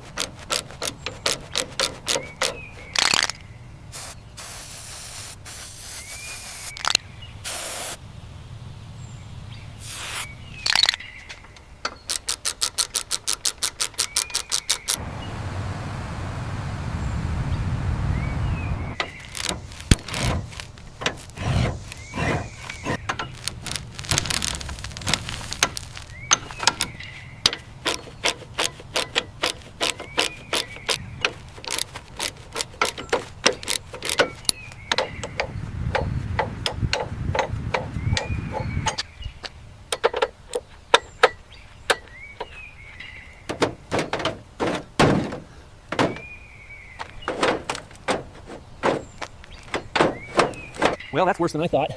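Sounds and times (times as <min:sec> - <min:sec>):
low rumble: 0:15.0 - 0:26.3
short squeak: 0:19.0 - 0:23.1
knocks and clanks on metal: 0:19.0 - 0:23.4, 0:26.3 - 0:39.0, 0:43.5 - 0:46.3, 0:47.2 - 0:51.1.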